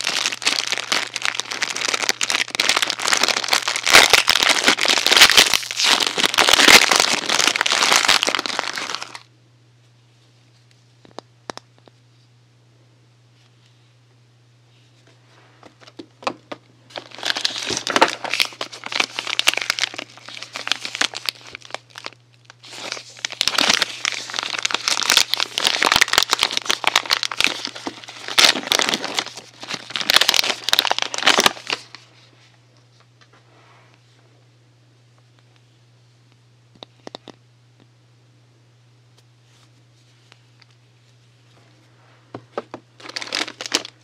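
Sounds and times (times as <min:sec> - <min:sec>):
packaging crinkling and rustling: 0:00.0 - 0:09.3, 0:15.8 - 0:32.3, 0:42.6 - 0:44.0.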